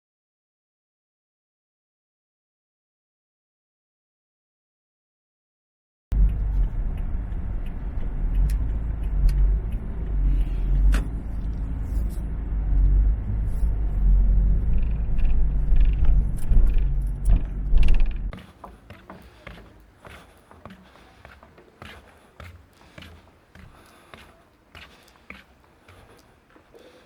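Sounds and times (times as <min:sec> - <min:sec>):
vehicle road rumble: 0:06.1 - 0:27.0.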